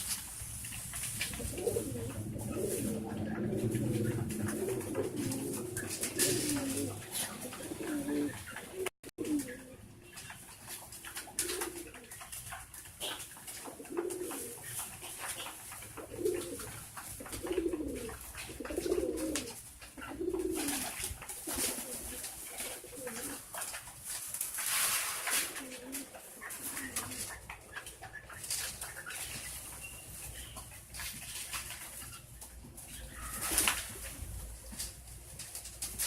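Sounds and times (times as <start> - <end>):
pigeons cooing: 0.6 - 23.9, 24.7 - 29.6.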